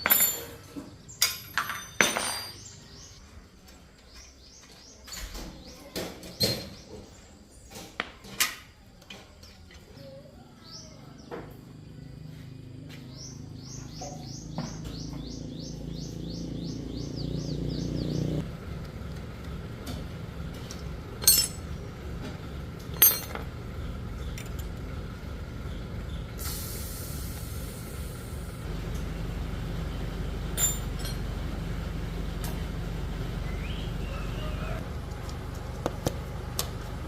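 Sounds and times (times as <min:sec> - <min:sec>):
metal tools clinking: 0:00.0 - 0:02.8, 0:21.2 - 0:21.8, 0:22.9 - 0:23.5, 0:30.6 - 0:31.3
bird chirping: 0:09.7 - 0:18.4, 0:33.4 - 0:34.8
low steady hum: 0:18.4 - 0:37.0.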